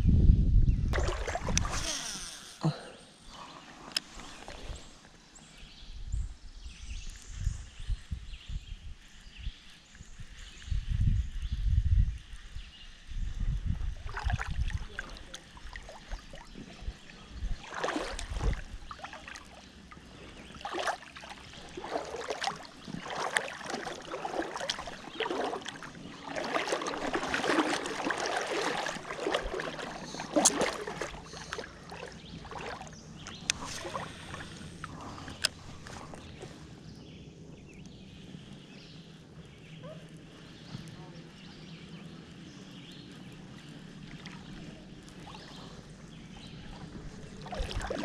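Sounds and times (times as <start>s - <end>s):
creek water splashing and sloshing: 0.9s - 2.2s, 3.3s - 5.5s, 13.8s - 37.0s, 37.6s - 48.0s.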